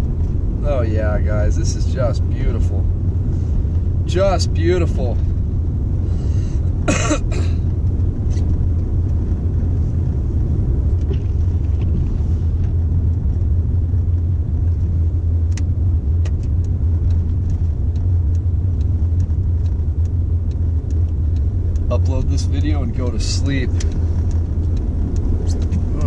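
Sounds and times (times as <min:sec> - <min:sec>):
car engine and tyres droning: 0:00.0 - 0:26.0
faint ticks: 0:15.4 - 0:26.0.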